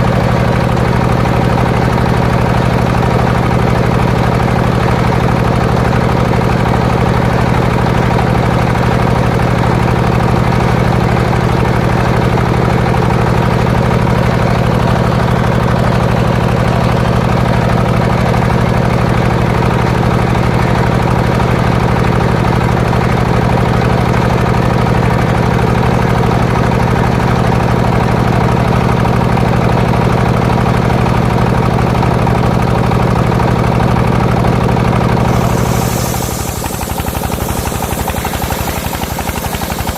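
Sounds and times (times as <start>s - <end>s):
sawmill engine droning: 34.3s - 39.9s.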